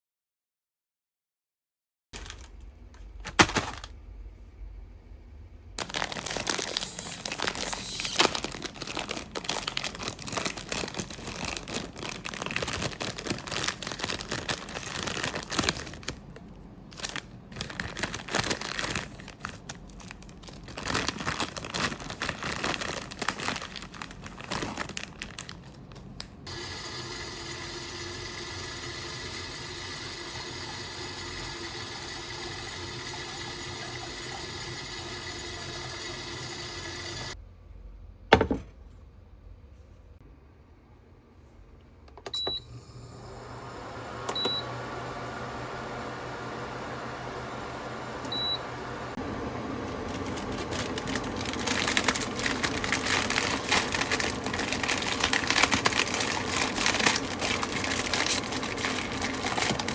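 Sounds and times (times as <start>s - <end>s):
plastic packaging crinkling: 2.2s - 4.0s, 5.8s - 26.5s, 49.2s - 59.9s
steady humming rush: 43.3s - 59.9s.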